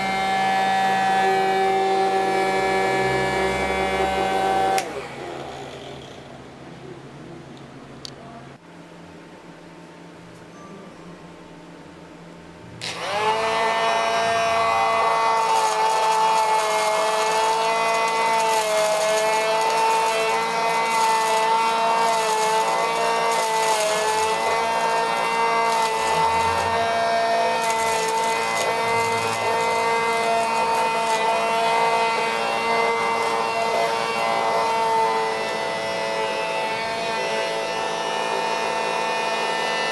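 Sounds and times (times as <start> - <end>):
small electric motor whining: 12.8 - 39.9.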